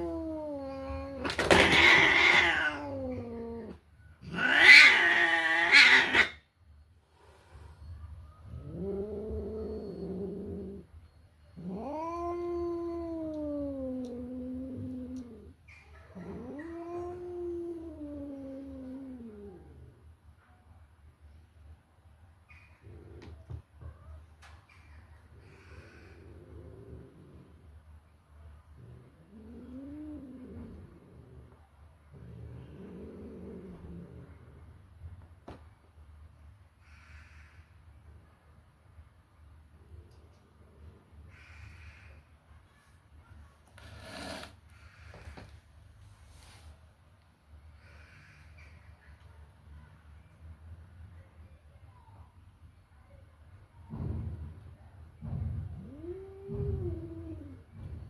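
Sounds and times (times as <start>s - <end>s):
cat yowling: 0.0s - 6.4s, 11.6s - 19.5s.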